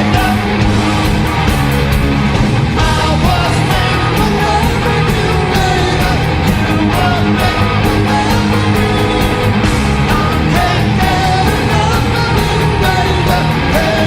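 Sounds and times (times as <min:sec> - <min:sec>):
rock song: 0:00.0 - 0:14.0
steady drumbeat: 0:00.0 - 0:14.0
person singing: 0:02.8 - 0:14.0.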